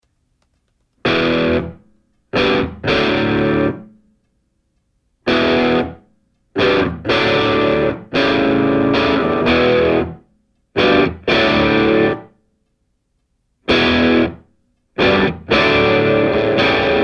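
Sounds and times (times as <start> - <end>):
distorted electric guitar chords: 1.0 - 1.8, 2.4 - 4.0, 5.3 - 6.0, 6.6 - 10.2, 10.8 - 12.3, 13.7 - 17.0.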